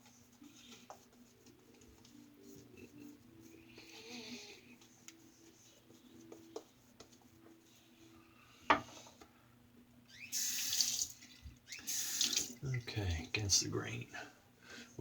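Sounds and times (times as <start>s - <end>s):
water tap running: 10.3s - 12.8s.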